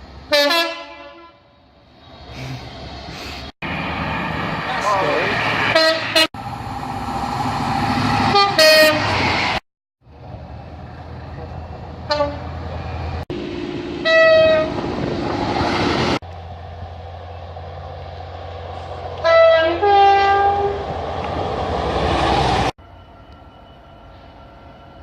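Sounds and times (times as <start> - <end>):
train horn: 0.3 - 1.5, 5.7 - 6.3, 8.3 - 9.1, 12.1 - 12.5, 14.0 - 14.8, 19.2 - 20.8
trains rumbling past: 1.7 - 25.0.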